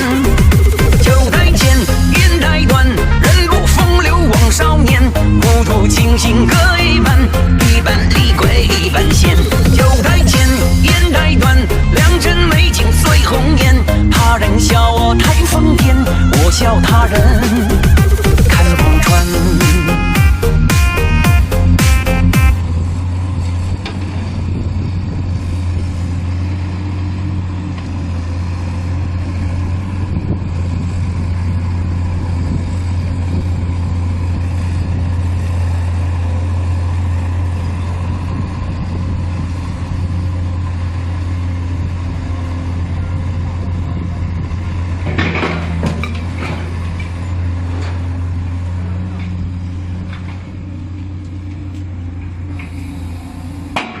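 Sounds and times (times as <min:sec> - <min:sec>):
excavator diesel engine running: 0:00.0 - 0:54.0
metal clanks: 0:45.0 - 0:48.1.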